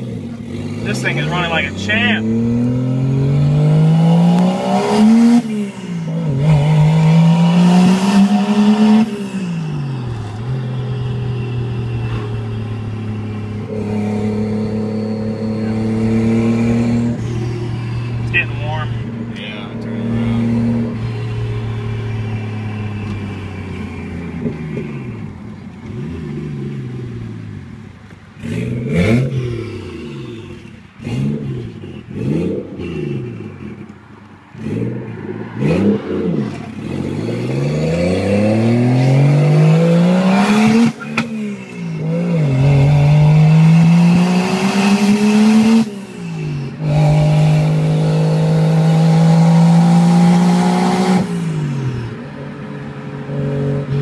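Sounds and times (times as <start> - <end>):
car engine revving: 0.0 - 54.0.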